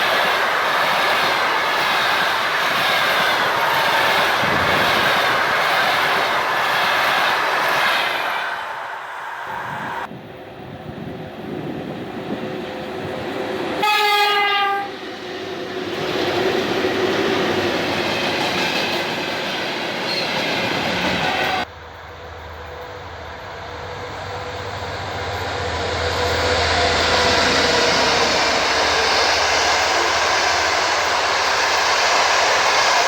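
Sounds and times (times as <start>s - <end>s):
diesel locomotive engine drone: 0.0s - 33.0s
rail noise: 0.0s - 33.0s
train rumble: 0.0s - 33.0s
locomotive horn blast: 13.8s - 15.0s.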